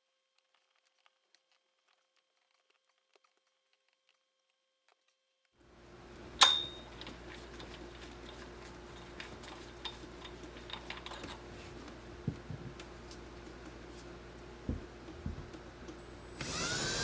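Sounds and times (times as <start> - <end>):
steady room hum: 5.6 - 17.0
sharp ringing clink: 6.4 - 6.9
light ticks and clicks of handling: 6.6 - 14.1.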